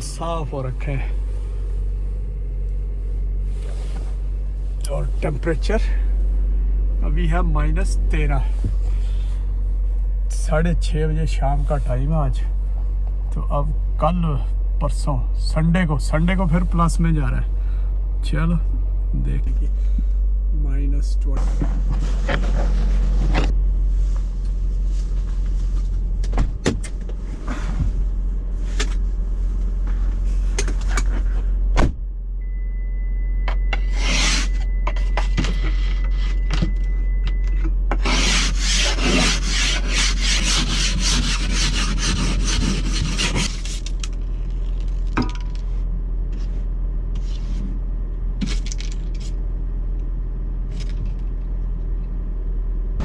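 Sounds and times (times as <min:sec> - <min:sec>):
car idling hum: 0:00.0 - 0:53.0
wipers scraping frosted windshield: 0:38.0 - 0:44.0.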